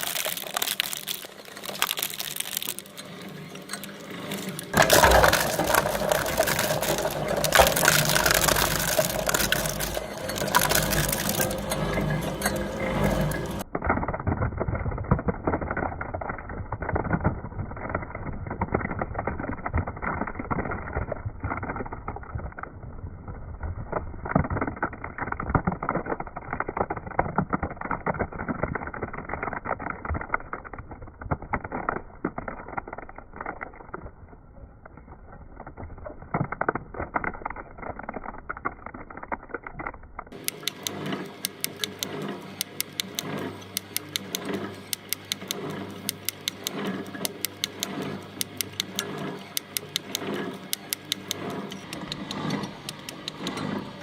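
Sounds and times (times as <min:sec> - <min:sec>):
churning shredder motor: 0:00.0 - 0:13.7, 0:40.3 - 0:54.0
shredder crackling and rattling: 0:00.0 - 0:16.4, 0:40.3 - 0:54.0.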